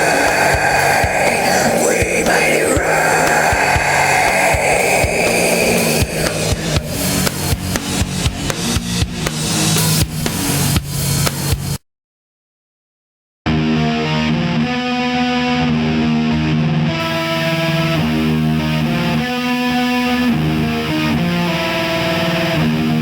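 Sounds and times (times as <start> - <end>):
distorted electric guitar riff: 0.0 - 8.8.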